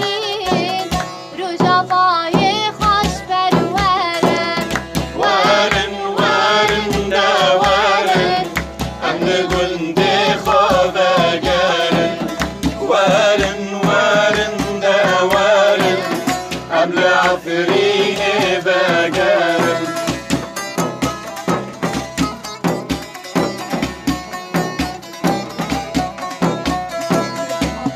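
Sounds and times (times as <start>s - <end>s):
woman singing folk song: 0.0s - 17.5s
hand drum rhythm: 0.0s - 27.9s
instrumental backing: 0.0s - 27.9s.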